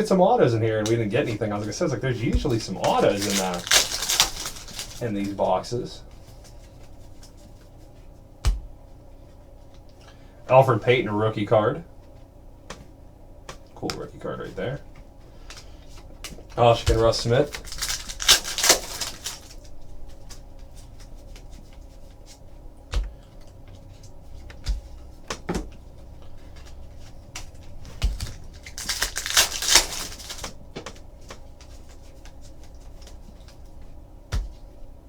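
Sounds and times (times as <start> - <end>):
cards rustling: 0.0 - 8.2, 13.5 - 34.8
trading cards clicking and tapping: 0.8 - 5.5, 22.9 - 34.6.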